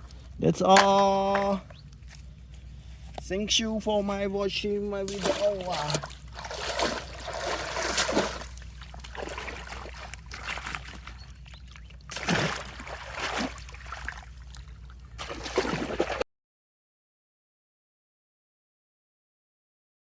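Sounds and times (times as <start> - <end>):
water splashing and trickling: 4.1 - 16.2.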